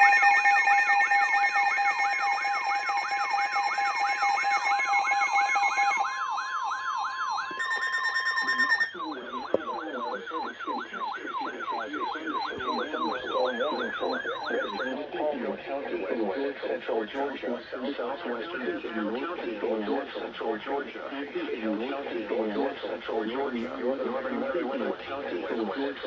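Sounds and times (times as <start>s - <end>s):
electronic siren yelping: 0.0s - 14.9s
electronic alert tones: 7.2s - 14.9s.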